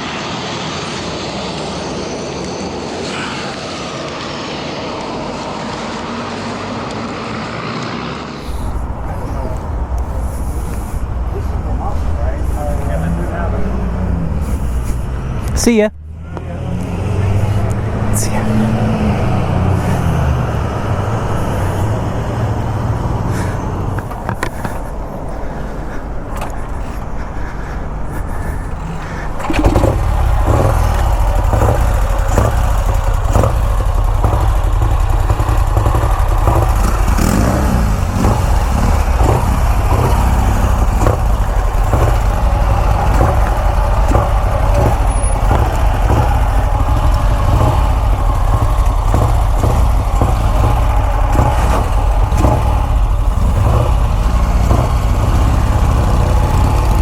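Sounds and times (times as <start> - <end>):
motorcycle engine running: 8.4 - 57.0.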